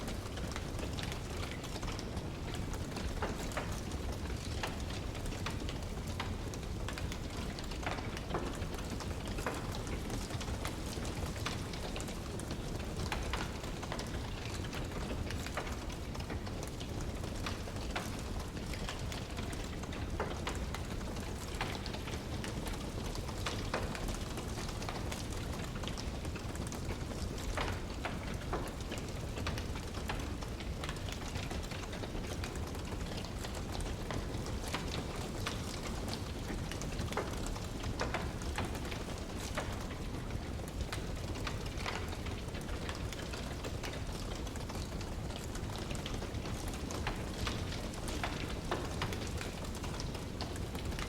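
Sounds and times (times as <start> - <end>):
wood fire crackling: 0.0 - 51.0.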